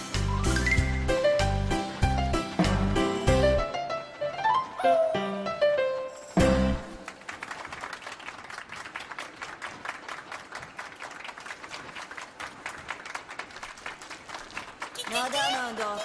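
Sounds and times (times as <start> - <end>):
crowd applauding: 6.7 - 16.0.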